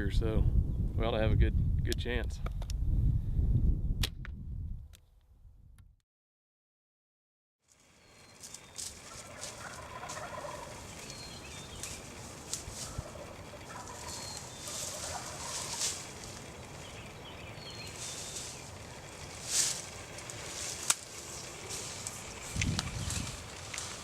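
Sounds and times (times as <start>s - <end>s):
outdoor background noise: 7.6s - 24.0s
turkeys gobbling: 8.3s - 24.0s.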